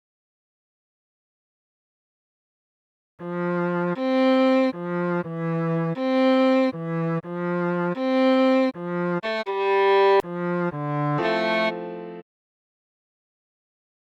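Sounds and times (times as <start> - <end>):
solo viola melody: 3.2 - 12.2.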